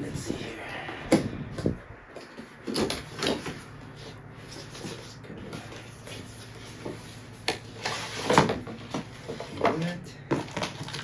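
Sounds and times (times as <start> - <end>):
packaging shuffling and rustling: 1.5 - 11.0.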